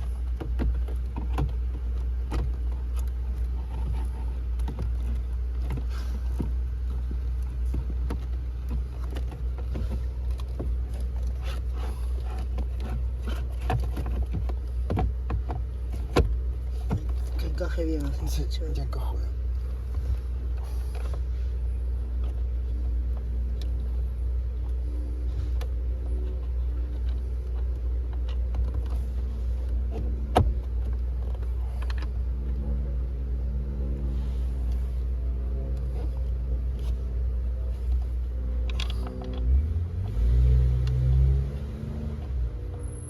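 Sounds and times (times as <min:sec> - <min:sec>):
steady low rumble: 0:00.0 - 0:43.0
clicks and knocks of motor handling: 0:37.8 - 0:39.7.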